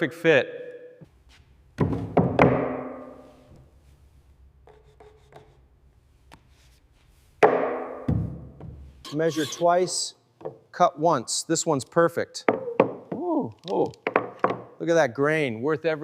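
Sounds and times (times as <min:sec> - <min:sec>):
hard knocks on wood: 0:07.4 - 0:08.8.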